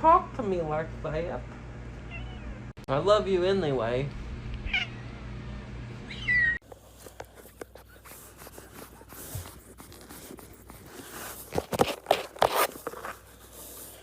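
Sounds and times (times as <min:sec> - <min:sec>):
cat meowing: 0:02.1 - 0:02.7, 0:04.6 - 0:05.2, 0:06.1 - 0:06.6.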